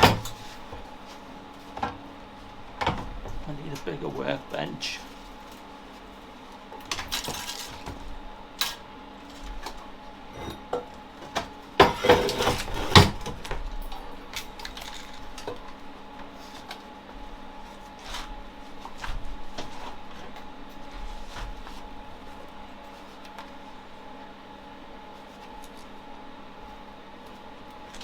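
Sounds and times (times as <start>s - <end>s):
metal tools clinking and clanking: 10.3s - 10.8s.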